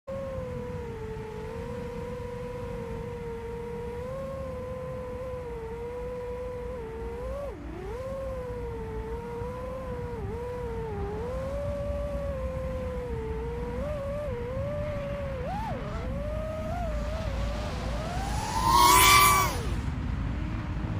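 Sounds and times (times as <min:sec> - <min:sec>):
quadcopter motors whining: 0:00.1 - 0:20.6
low rumble of airflow: 0:00.1 - 0:20.9.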